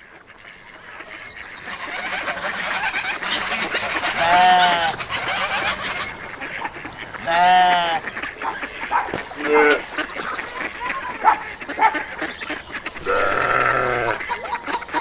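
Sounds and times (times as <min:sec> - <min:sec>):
birds chirping: 0:00.0 - 0:15.0
goat bleating: 0:04.1 - 0:05.0, 0:07.1 - 0:08.2, 0:09.4 - 0:09.9, 0:12.9 - 0:14.2.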